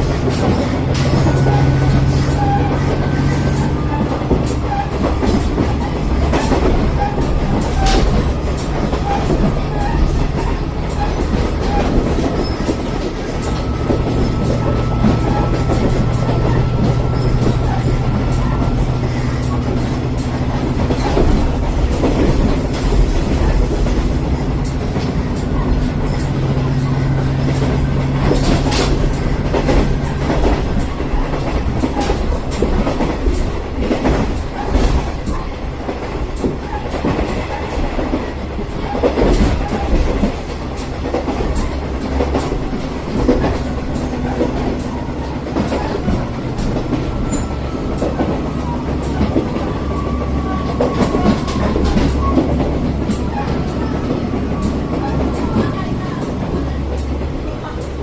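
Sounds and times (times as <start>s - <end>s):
diesel engine humming: 0.0s - 35.8s
train wheels rumbling: 0.0s - 58.0s
wheels clattering over rail joints: 0.0s - 58.0s.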